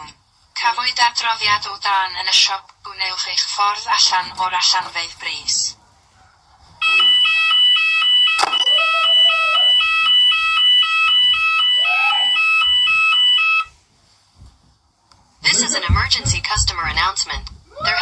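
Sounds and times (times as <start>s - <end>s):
fire alarm two-tone alert: 6.8s - 13.8s.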